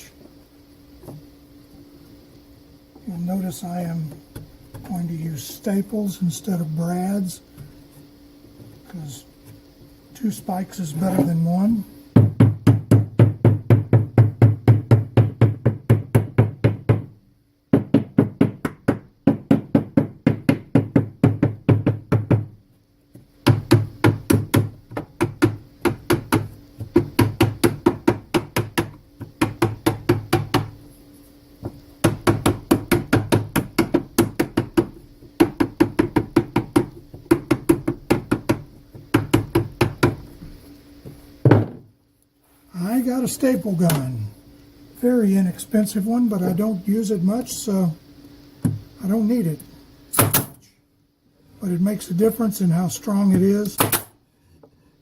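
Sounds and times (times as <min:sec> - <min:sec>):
rapid knocking on wood: 0:12.1 - 0:22.6, 0:23.2 - 0:30.8, 0:31.6 - 0:40.5.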